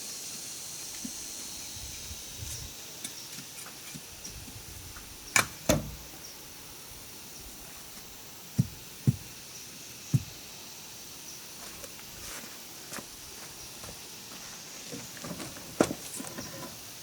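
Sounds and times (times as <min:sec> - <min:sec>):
sharp knocks: 0:08.6 - 0:09.3, 0:10.1 - 0:10.4
dull thuds: 0:08.6 - 0:09.4, 0:10.1 - 0:10.4.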